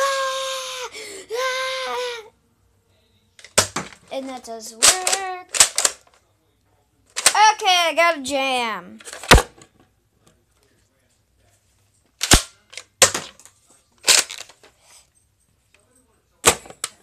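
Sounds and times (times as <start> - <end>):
dart blaster rattling: 4.8 - 6.0
plastic dart blaster clacks: 4.8 - 6.0, 12.2 - 13.4.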